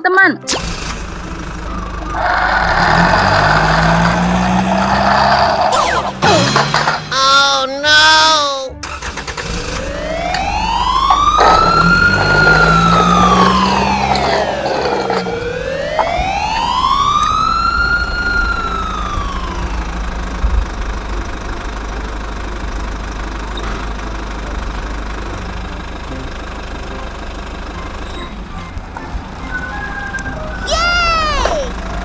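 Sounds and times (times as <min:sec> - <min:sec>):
wailing siren: 0:01.5 - 0:06.0, 0:09.6 - 0:20.9.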